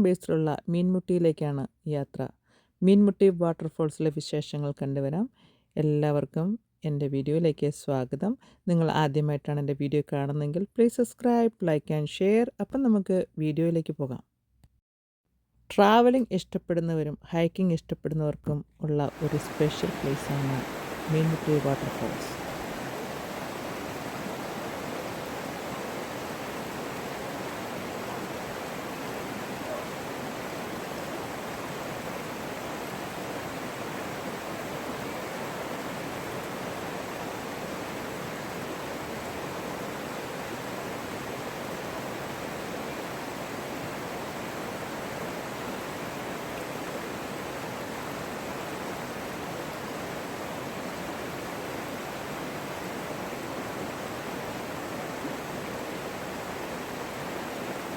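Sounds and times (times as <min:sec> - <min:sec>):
rushing water: 0:19.1 - 0:57.9.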